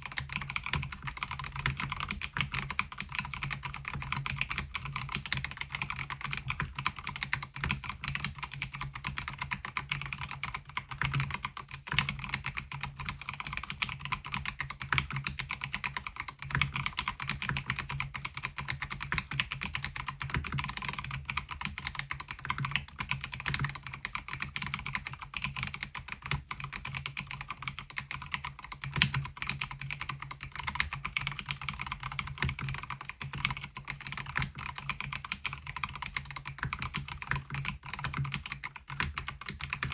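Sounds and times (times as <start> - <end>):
fast mechanical keyboard typing: 0.0 - 39.9.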